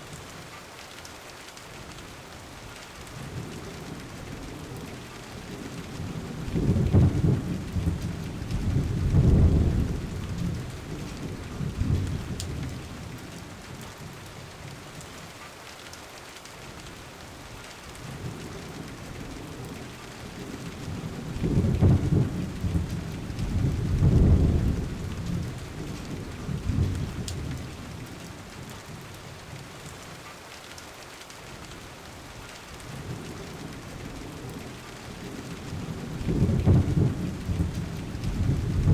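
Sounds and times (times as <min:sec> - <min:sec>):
steady rain: 0:00.0 - 0:38.9
thunder rumbling: 0:05.9 - 0:13.1, 0:20.3 - 0:28.0, 0:35.2 - 0:38.9.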